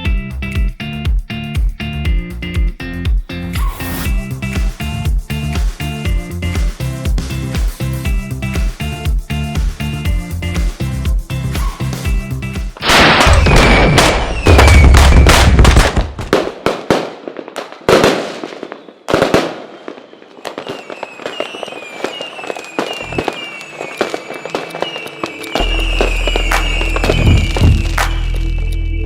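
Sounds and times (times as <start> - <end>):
firecrackers crackling: 4.4 - 28.8
loud firework bangs: 12.8 - 28.3
high falling whistles: 13.3 - 15.4, 19.7 - 29.0.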